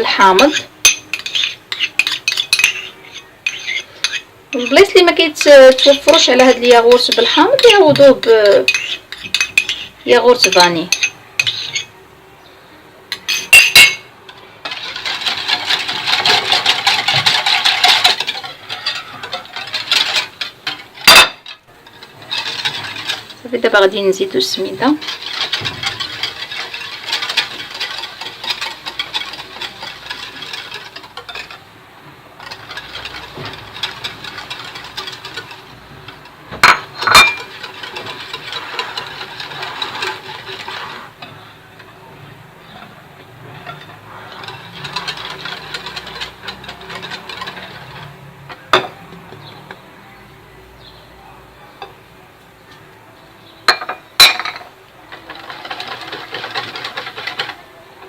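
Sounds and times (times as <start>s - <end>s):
utensil clinking against bowl: 0.2s - 11.9s, 13.1s - 23.4s, 24.2s - 31.6s, 32.4s - 41.9s, 42.7s - 49.8s
utensil swishing through batter: 14.6s - 21.0s, 21.8s - 31.7s, 32.4s - 41.6s, 42.6s - 48.6s, 55.2s - 57.7s.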